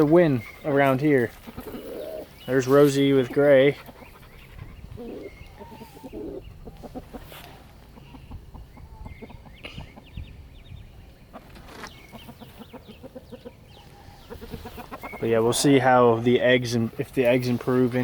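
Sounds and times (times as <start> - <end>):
hens low calls: 0.0 - 10.4, 11.2 - 18.0
hens clucking softly: 1.3 - 10.3, 11.2 - 16.0.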